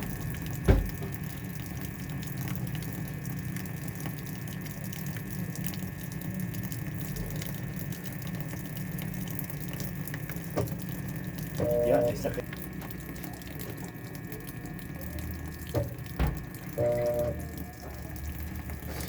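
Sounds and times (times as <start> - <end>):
water running in washing machine: 0.0 - 19.0
low steady hum: 10.7 - 19.0.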